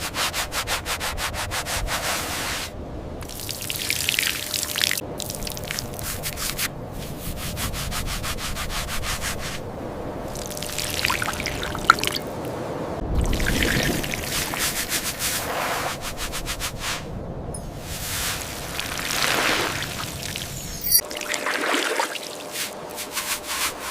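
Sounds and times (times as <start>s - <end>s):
brush scrubbing a hard object: 0.0s - 2.7s, 6.0s - 9.6s, 14.1s - 17.0s, 22.2s - 23.9s
rubbing and scraping: 0.0s - 2.8s, 6.0s - 9.6s, 13.9s - 17.1s, 22.4s - 23.9s.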